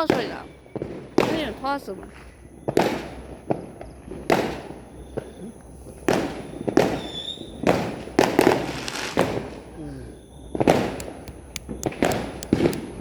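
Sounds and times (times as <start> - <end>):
firework whistle: 6.3 - 7.7
fireworks bangs: 10.6 - 13.0.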